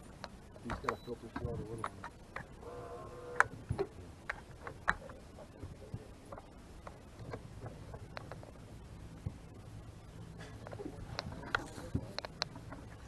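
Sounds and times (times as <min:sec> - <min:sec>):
light clicks and taps: 0:00.2 - 0:02.6, 0:03.4 - 0:08.6, 0:10.5 - 0:13.0.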